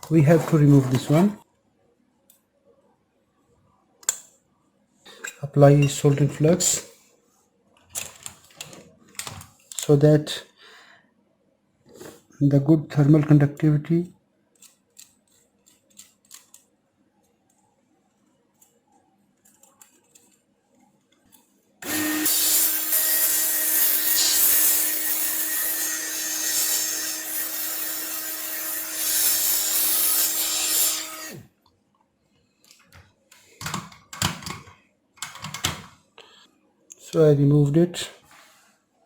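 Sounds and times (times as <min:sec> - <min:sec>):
hot air tool hissing: 0:21.8 - 0:27.4.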